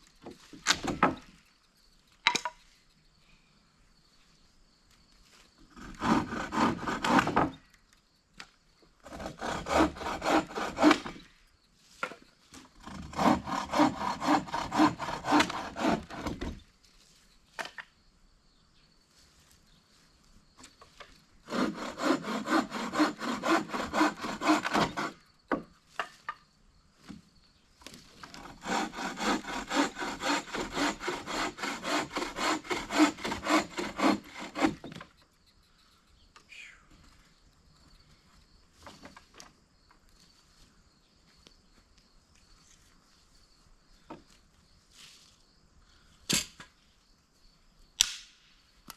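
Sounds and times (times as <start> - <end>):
hand saw cutting wood: 5.8 - 7.6, 9.0 - 11.3, 12.8 - 16.6, 21.4 - 25.2, 28.2 - 35.1.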